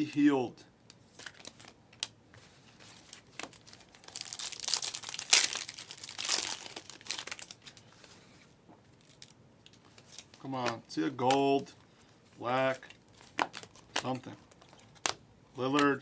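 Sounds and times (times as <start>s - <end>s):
wrapper crinkling and tearing: 1.1s - 2.1s, 3.0s - 7.9s, 9.0s - 10.4s, 12.7s - 15.2s
cards clicking: 10.6s - 11.6s, 12.8s - 16.0s.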